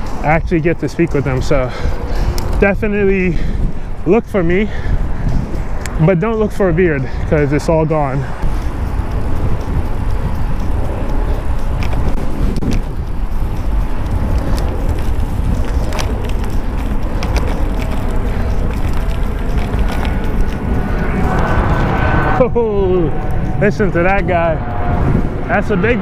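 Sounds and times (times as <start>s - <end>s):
bicycle clicks and rattles: 0.0s - 22.0s
wind buffeting a microphone: 0.0s - 26.0s
jet engines whining: 19.2s - 26.0s.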